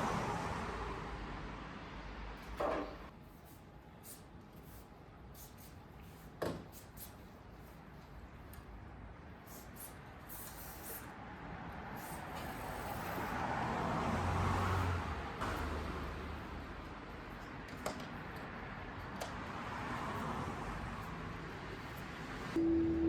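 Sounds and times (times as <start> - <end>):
car passing by: 0.0 - 2.4, 11.2 - 16.8, 19.3 - 23.0.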